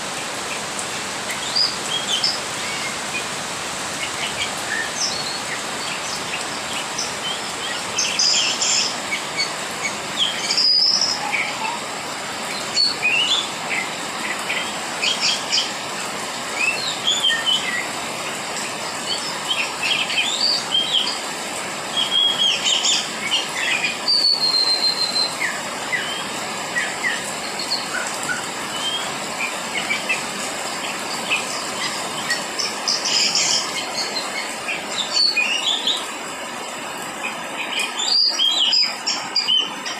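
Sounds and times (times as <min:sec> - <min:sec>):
steady rain falling: 0:00.0 - 0:39.9
bird chirps and calls: 0:03.9 - 0:15.8, 0:21.9 - 0:36.1, 0:37.0 - 0:39.9.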